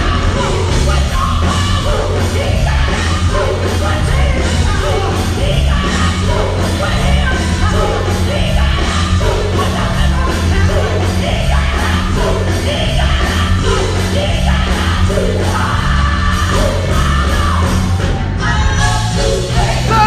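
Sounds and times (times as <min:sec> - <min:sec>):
full band playing: 0:00.0 - 0:20.0
gospel group singing: 0:00.0 - 0:20.0
heavy bass: 0:00.0 - 0:20.0
shouted vocal lines: 0:19.5 - 0:20.0.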